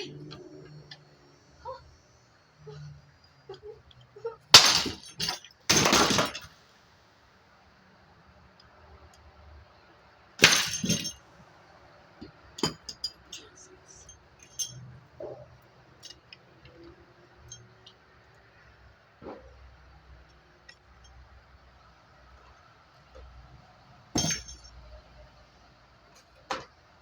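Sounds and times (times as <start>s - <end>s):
ceiling fan smashing: 4.5s - 6.5s, 10.4s - 11.2s, 24.2s - 24.7s
glass breaking: 4.5s - 6.5s, 10.4s - 11.2s, 24.2s - 24.7s
small clinks of pieces: 10.4s - 11.2s.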